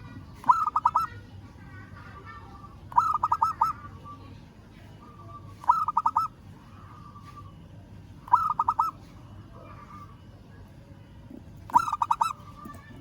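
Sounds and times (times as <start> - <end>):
dove cooing: 0.4 - 1.1, 2.9 - 3.8, 5.6 - 6.3, 8.3 - 9.0, 11.6 - 12.5.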